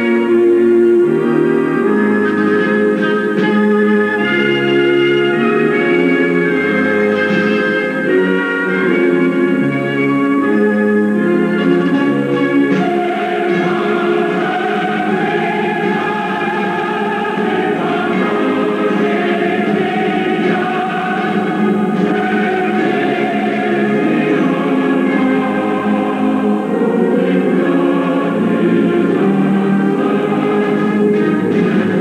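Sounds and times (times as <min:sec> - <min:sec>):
choir singing long chords: 0:00.0 - 0:32.0
orchestral accompaniment: 0:00.0 - 0:32.0.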